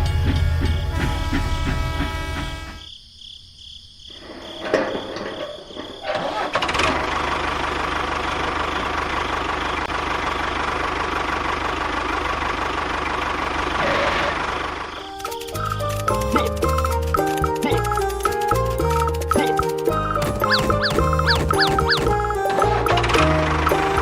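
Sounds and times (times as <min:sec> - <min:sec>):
small engine starting and running: 0:06.3 - 0:24.0.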